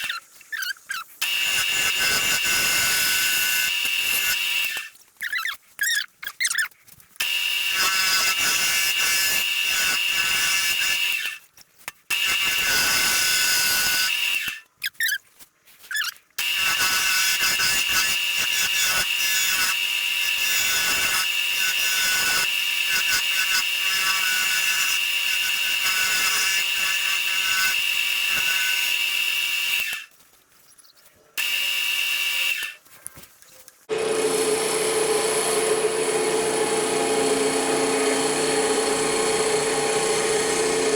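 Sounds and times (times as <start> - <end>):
wood lathe whining: 1.2 - 4.9, 7.2 - 11.3, 18.1 - 30.0, 33.9 - 40.9.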